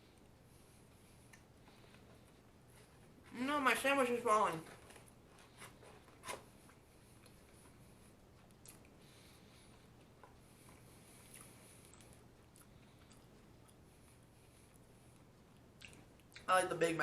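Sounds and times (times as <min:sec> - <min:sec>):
faint chewing: 0:00.0 - 0:03.4, 0:04.7 - 0:16.5
low steady hum: 0:00.0 - 0:17.0.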